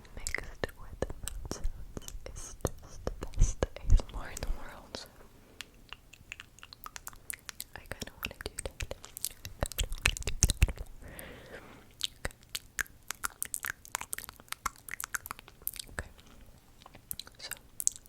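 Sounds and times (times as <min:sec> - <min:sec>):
soft breathy hiss: 0:00.0 - 0:06.6, 0:07.2 - 0:12.5, 0:15.5 - 0:18.0
wet mouth clicks and smacks: 0:05.6 - 0:11.0, 0:11.9 - 0:18.0.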